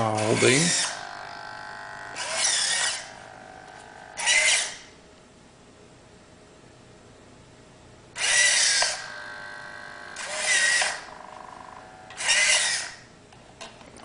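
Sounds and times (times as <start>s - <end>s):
faint servo buzz: 0.1s - 4.9s, 8.2s - 13.1s
servo motors whining: 0.2s - 4.9s, 8.2s - 13.0s.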